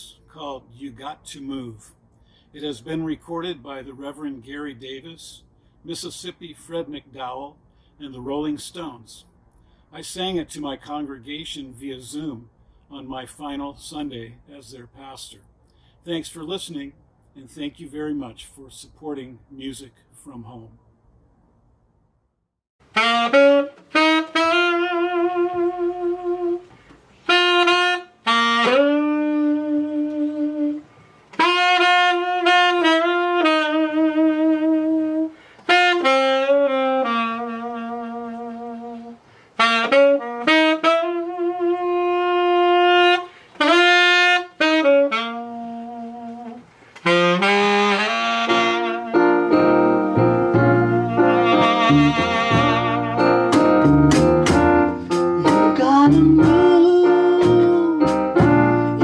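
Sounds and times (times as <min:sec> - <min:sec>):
saxophone bluesy melody: 0:22.8 - 0:59.0
piano chords: 0:48.4 - 0:59.0.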